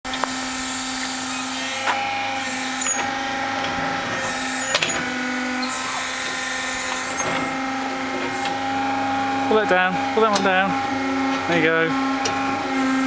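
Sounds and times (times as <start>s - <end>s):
toy motor humming: 0.1s - 3.1s, 5.6s - 7.6s.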